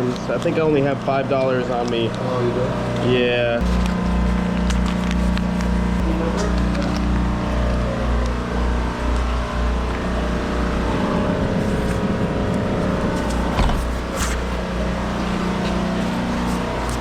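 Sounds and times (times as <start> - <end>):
car engine and road noise: 3.6 - 17.0.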